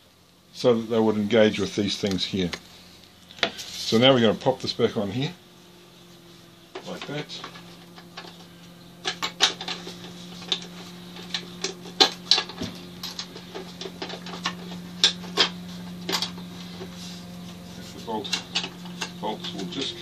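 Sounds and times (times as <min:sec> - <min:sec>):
steady low hum: 0:00.0 - 0:20.0
light clicks and knocks of parts: 0:06.6 - 0:20.0.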